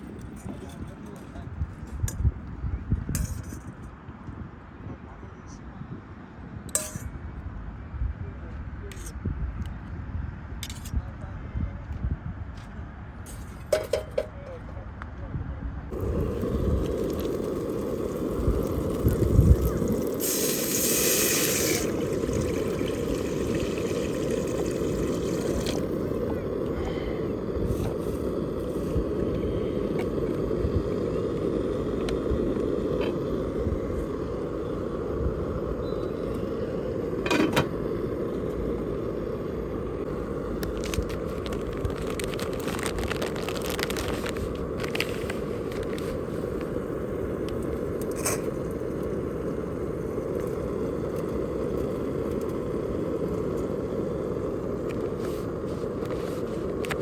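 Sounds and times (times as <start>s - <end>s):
wind and road rumble: 0.0s - 57.0s
clicks and light crackles: 40.5s - 46.8s, 50.3s - 52.7s, 54.8s - 57.0s.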